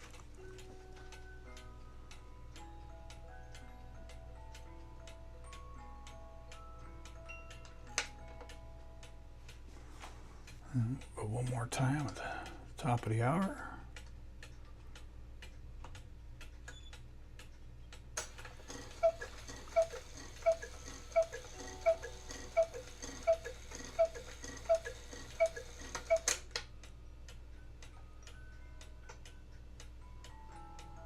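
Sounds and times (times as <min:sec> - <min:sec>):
music box playing: 0:00.4 - 0:09.3, 0:18.6 - 0:26.4, 0:27.9 - 0:31.0
clock ticking: 0:10.5 - 0:26.4
clock mechanism click: 0:14.4 - 0:26.7
cuckoo call: 0:19.0 - 0:26.3.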